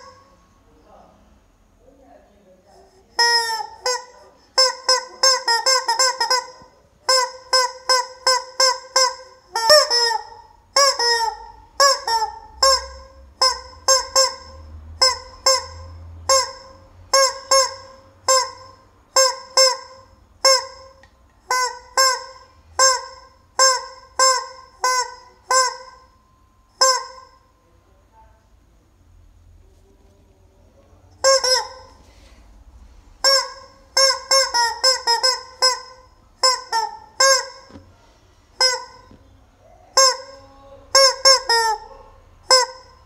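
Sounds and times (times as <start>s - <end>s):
rubber chicken toy squawking: 0.0s - 0.3s, 3.1s - 26.1s, 26.8s - 27.4s, 31.2s - 32.0s, 33.2s - 37.8s, 38.6s - 43.0s.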